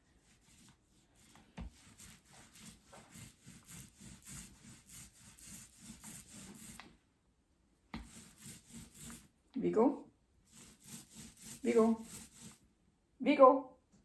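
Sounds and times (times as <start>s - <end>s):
brush strokes rubbing on wood: 0.0s - 6.9s, 8.0s - 9.3s, 10.5s - 12.6s.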